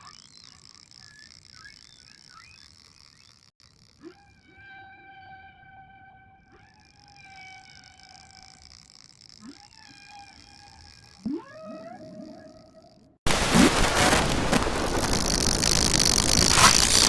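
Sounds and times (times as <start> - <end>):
whale calls: 3.9 - 13.2.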